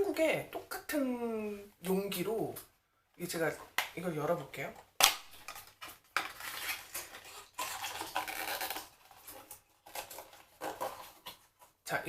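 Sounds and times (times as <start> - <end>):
packaging scraping and rustling: 5.3 - 11.8.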